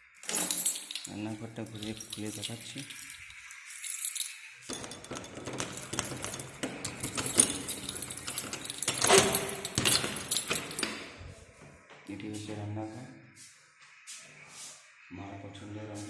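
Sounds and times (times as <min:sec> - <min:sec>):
keys jangling: 0:00.0 - 0:11.1
lock and latch clicking: 0:04.7 - 0:11.0.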